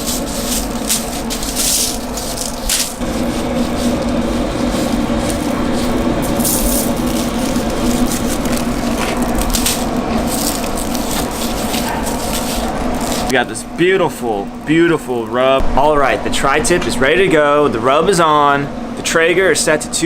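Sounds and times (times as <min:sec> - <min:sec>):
spice grains hissing from shaker: 0:00.0 - 0:15.3
steady low hum: 0:00.0 - 0:20.0.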